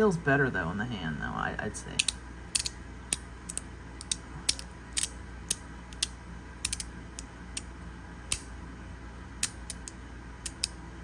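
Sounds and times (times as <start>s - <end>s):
fidget slider clicking: 2.0s - 7.7s, 8.3s - 8.5s, 9.4s - 10.8s.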